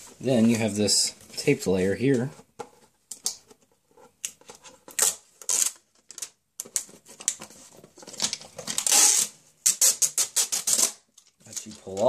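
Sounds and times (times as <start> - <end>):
tape peeling off: 4.9 - 6.3, 8.7 - 11.0
plastic packaging crackling: 8.0 - 12.0.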